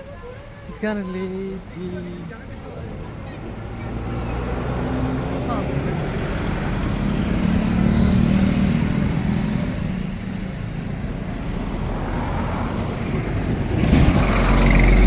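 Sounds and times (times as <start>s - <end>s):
road noise: 0.0s - 15.0s
vehicle engine hum: 0.0s - 15.0s.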